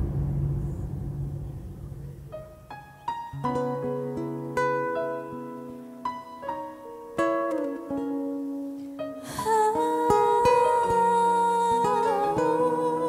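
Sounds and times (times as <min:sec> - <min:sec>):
slow instrumental ballad: 0:00.0 - 0:13.0.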